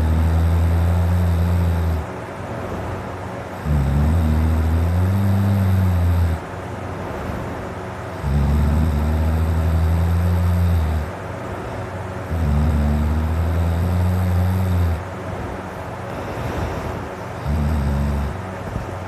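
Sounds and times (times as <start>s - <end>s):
man snoring deeply: 0.0s - 2.1s, 3.5s - 6.6s, 8.1s - 15.2s, 16.1s - 18.8s.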